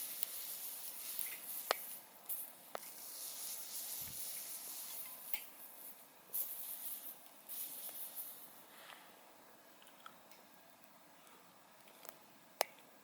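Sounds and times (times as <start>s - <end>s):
fire crackles and pops: 0.0s - 9.2s
campfire burning with hiss: 0.0s - 9.6s.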